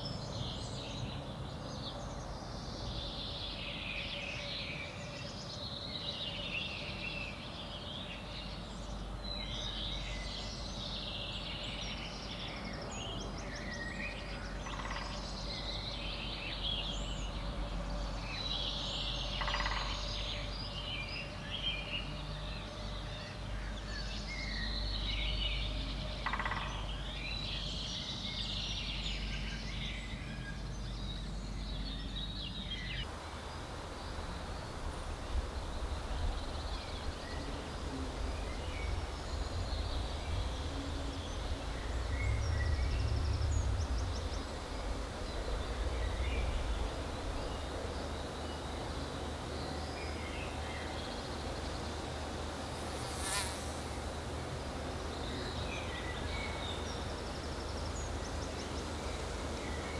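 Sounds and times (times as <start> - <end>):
low wind rumble: 33.1 - 59.9
fly buzzing: 51.7 - 55.6.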